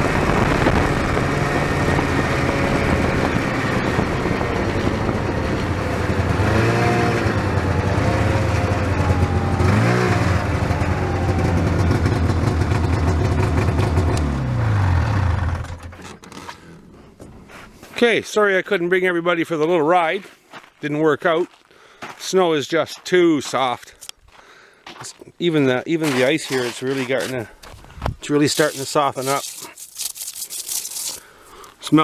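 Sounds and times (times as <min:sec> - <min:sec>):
snowmobile engine running: 0:00.0 - 0:16.0.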